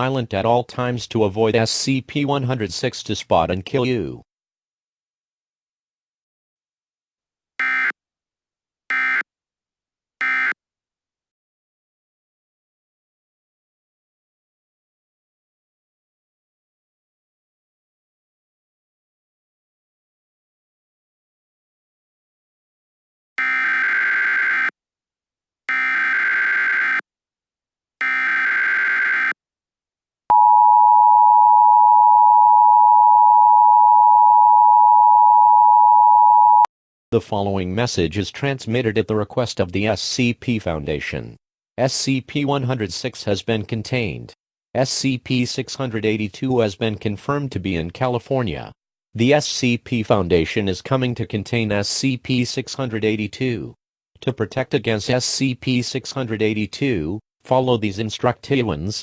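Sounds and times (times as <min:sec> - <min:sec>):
short digital buzzes: 0:07.6 - 0:07.9, 0:08.9 - 0:09.2, 0:10.2 - 0:10.6, 0:23.4 - 0:24.7, 0:25.7 - 0:27.0, 0:28.0 - 0:29.4
two-tone attention signal: 0:07.6 - 0:07.9, 0:08.9 - 0:09.2, 0:10.2 - 0:10.6, 0:23.4 - 0:24.7, 0:25.7 - 0:27.0, 0:28.0 - 0:29.4.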